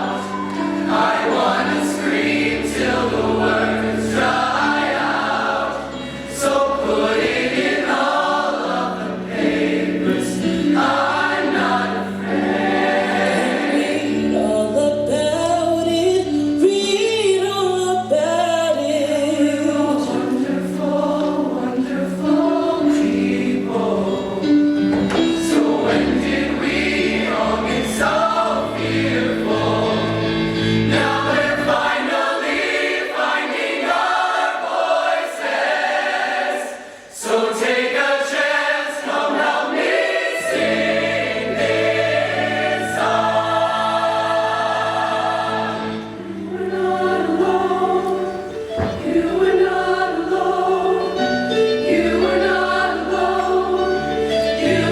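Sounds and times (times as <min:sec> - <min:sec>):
choir singing in harmony: 0:00.0 - 0:16.7, 0:17.3 - 0:54.9
instrumental accompaniment: 0:19.6 - 0:36.1, 0:38.4 - 0:54.9.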